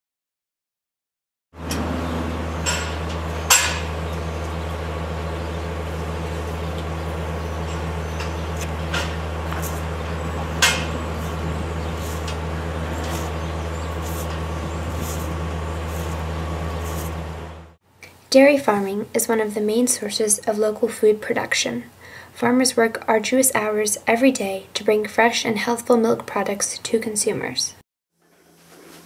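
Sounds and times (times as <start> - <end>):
low machine hum: 1.6 - 17.8
metallic clanks and clicks: 2.6 - 4.6, 7.6 - 13.4.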